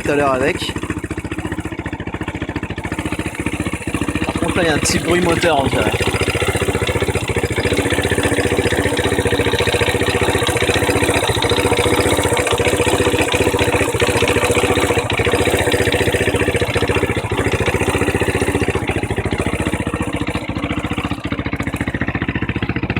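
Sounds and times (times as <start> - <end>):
motorcycle engine idling: 0.0 - 22.9.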